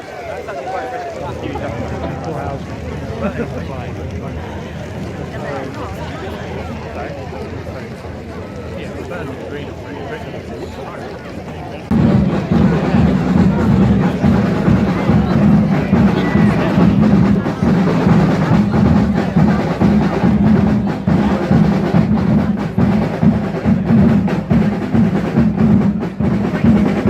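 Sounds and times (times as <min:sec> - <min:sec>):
drums playing rapid strikes: 0:11.9 - 0:27.0.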